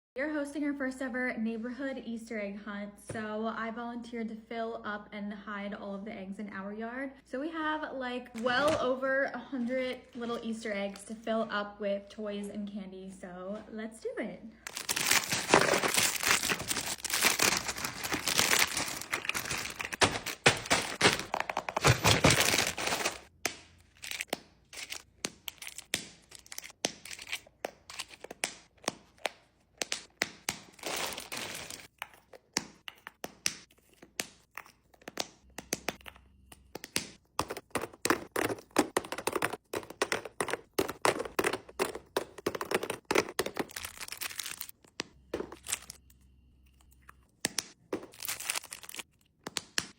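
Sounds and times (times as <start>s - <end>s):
candy wrappers crinkling: 14.7s - 29.2s, 30.6s - 31.9s, 37.5s - 46.0s, 47.9s - 49.4s.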